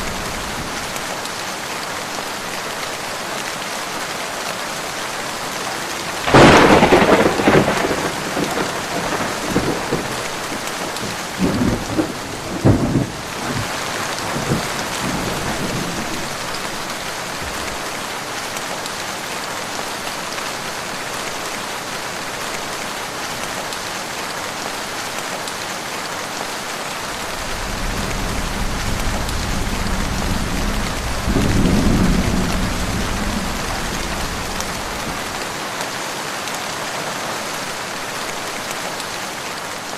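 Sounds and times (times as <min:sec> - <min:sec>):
heavy rain: 0:00.0 - 0:39.9
loud thunderclap: 0:06.2 - 0:13.7, 0:27.2 - 0:35.4
distant thunder rumble: 0:06.2 - 0:16.4, 0:27.1 - 0:35.4.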